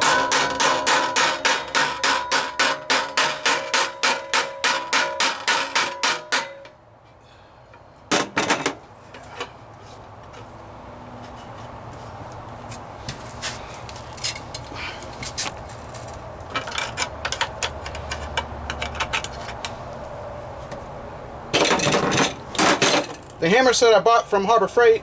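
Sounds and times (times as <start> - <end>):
hammer striking sheet metal: 0.0 - 6.8.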